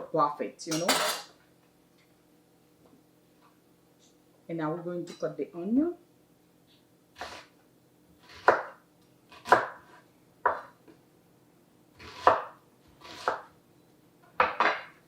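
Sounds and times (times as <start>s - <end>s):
knife chopping onion: 7.2s - 7.5s, 8.2s - 10.8s, 12.0s - 13.5s.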